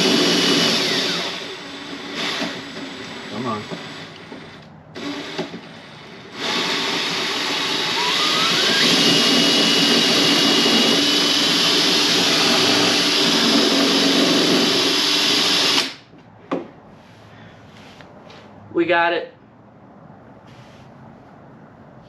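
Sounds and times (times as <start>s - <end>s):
power drill whining: 0.0s - 16.1s.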